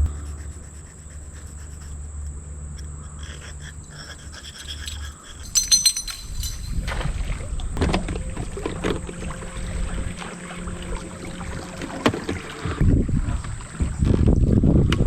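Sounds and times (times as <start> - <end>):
wind buffeting microphone: 12.7 - 15.0.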